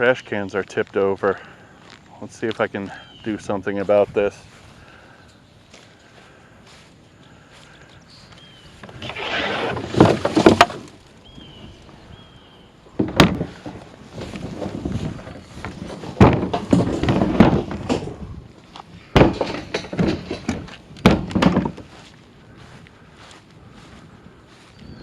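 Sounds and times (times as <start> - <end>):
scraping and rustling: 8.7 - 11.8, 12.9 - 22.8
trash cans thunking: 8.8 - 10.9, 12.9 - 18.4, 19.0 - 21.9.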